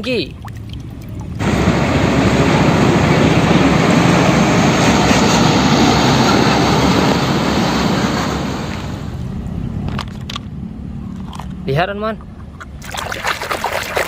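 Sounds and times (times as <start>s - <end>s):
water jet spraying: 12.8s - 14.0s.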